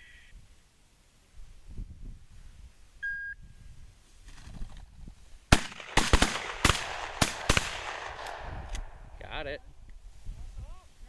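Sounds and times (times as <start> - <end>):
shotgun shots: 5.5 - 9.2.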